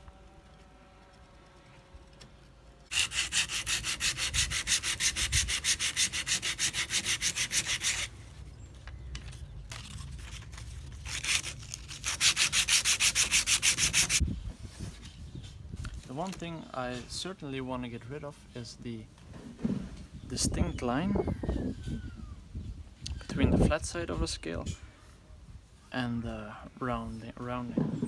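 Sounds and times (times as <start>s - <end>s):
sandpaper rubbing on wood: 2.9s - 8.1s, 10.3s - 14.2s.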